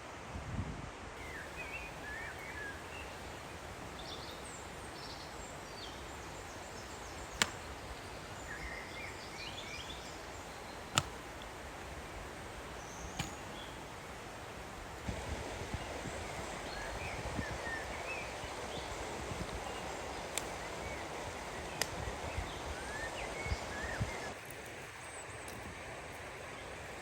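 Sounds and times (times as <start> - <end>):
outdoor hiss: 0.0 - 27.0
small birds chirping: 1.2 - 27.0
firewood cracking: 6.8 - 8.7, 9.6 - 13.8.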